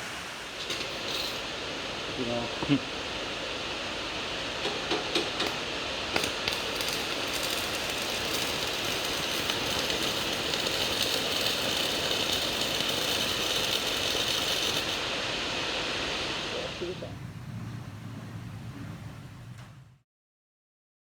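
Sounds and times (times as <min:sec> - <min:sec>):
welding arc hissing: 0:00.0 - 0:02.8, 0:04.6 - 0:17.1
welding arc crackling clicks: 0:04.6 - 0:15.0.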